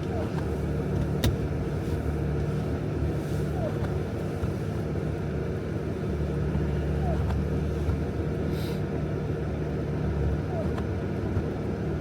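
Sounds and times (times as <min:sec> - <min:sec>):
diesel engine droning at low revs: 0:00.0 - 0:12.0.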